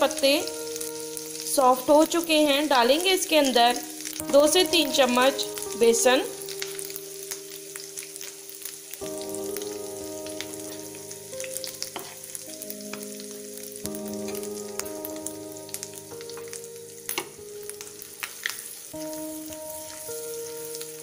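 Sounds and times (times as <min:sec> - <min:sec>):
flour sizzling in hot fat: 0:00.0 - 0:21.0
soft background music: 0:00.0 - 0:21.0
spoon scraping a pan: 0:12.0 - 0:12.3.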